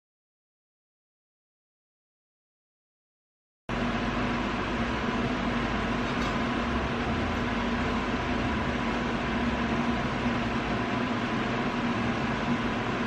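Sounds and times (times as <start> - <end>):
steady mechanical hum: 3.7 - 13.0.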